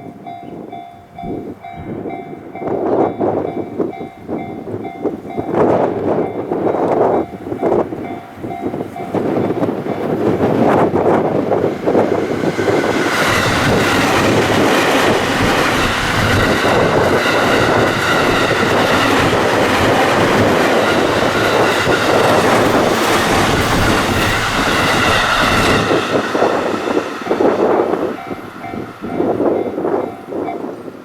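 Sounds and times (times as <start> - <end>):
train wheels rumbling on rails: 0.0 - 31.0
clickety-clack over rail joints: 2.8 - 30.8
steady high tones: 6.3 - 31.0.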